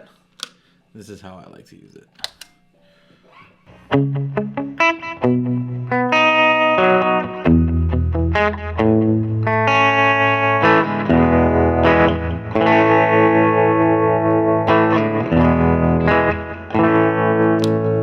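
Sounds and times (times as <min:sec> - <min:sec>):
electric guitar chords with echo: 0:03.7 - 0:18.0.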